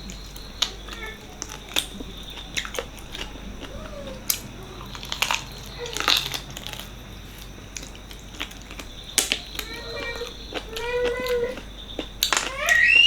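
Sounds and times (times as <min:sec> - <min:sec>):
chewing with wet mouth clicks: 0:00.0 - 0:13.0
crunching bites: 0:00.0 - 0:13.0.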